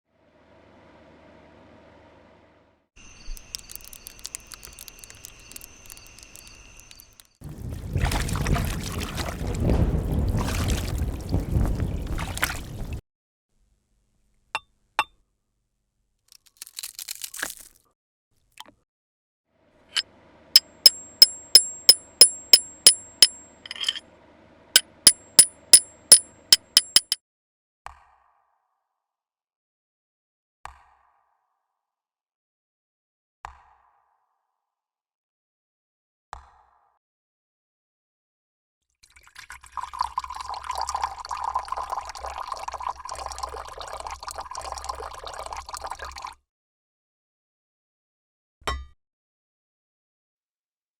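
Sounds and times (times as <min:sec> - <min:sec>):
liquid pouring: 0:03.2 - 0:13.0, 0:39.1 - 0:46.4
sharp metallic clicks: 0:20.6 - 0:24.0, 0:24.8 - 0:27.2.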